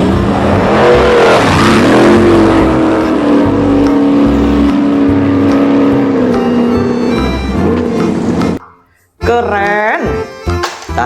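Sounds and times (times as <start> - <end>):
vehicle engine running: 0.0 - 8.6.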